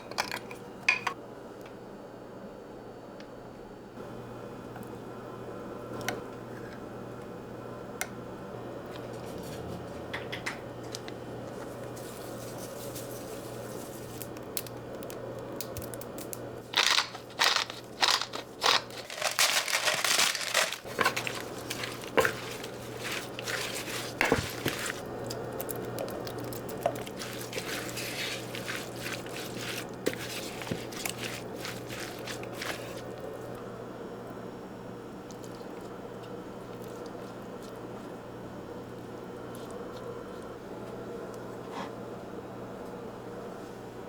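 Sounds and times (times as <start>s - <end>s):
steady low hum: 0.9s - 44.0s
crinkling crunching handling noises: 11.4s - 33.6s.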